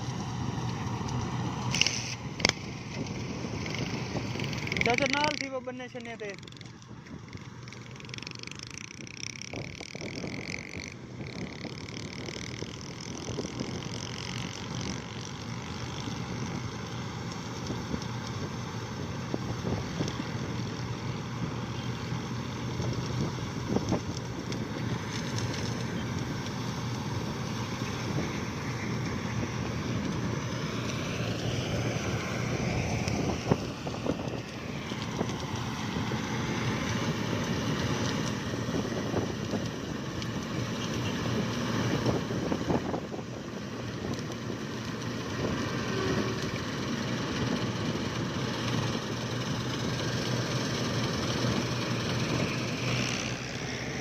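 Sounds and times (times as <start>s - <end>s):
engine humming: 0.0s - 54.0s
wind: 0.0s - 54.0s.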